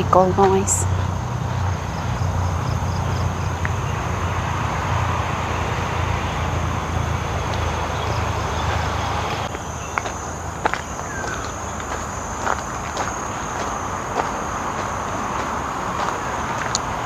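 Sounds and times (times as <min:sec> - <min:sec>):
road traffic rumble: 0:00.0 - 0:17.0.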